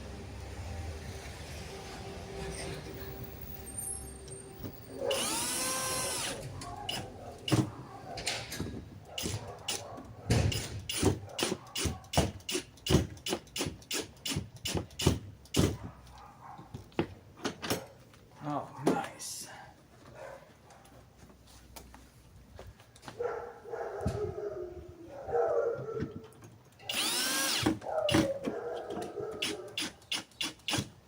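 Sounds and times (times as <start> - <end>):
cordless drill whirring: 5.0 - 7.7, 26.9 - 28.3
sharp clicks and knocks: 6.5 - 17.9.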